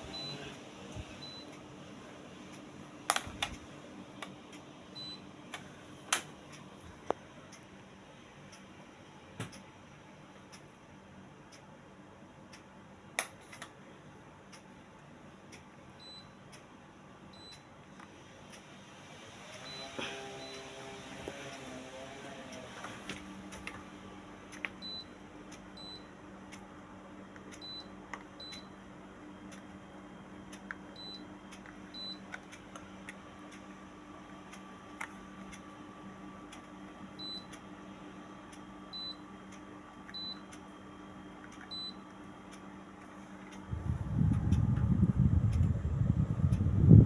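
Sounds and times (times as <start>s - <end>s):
air conditioner beeps: 0.0s - 21.7s, 22.3s - 47.0s
low hum: 43.4s - 47.0s.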